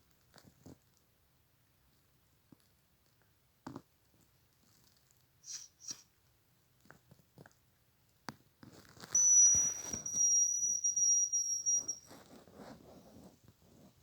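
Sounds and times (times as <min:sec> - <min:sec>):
high thin whistle: 0:05.4 - 0:06.1, 0:09.2 - 0:12.2.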